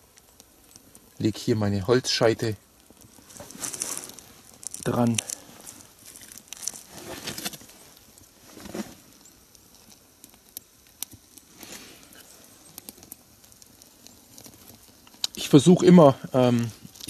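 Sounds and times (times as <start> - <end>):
campfire crackling and popping: 0.0 - 17.0.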